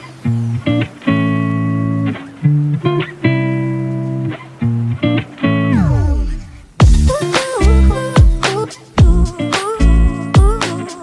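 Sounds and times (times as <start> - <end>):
deep hit: 5.7 - 7.2.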